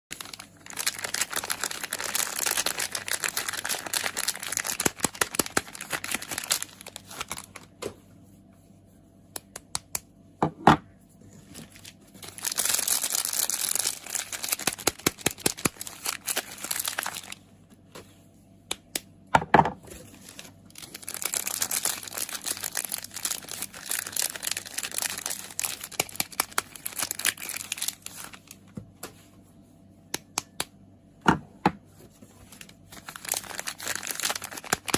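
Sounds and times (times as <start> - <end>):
wrapper crinkling and tearing: 0.1 - 7.7, 11.4 - 17.4, 20.0 - 28.6, 32.4 - 34.9.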